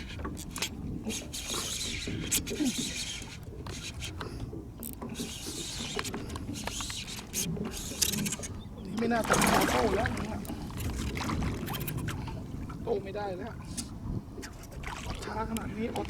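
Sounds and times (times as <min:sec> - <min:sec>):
fishing reel clicking: 0:00.0 - 0:08.5.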